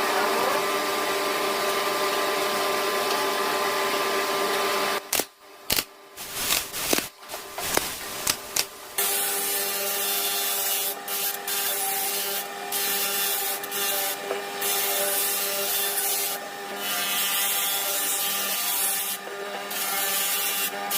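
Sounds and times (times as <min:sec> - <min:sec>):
power sander on wood: 0:06.2 - 0:20.9.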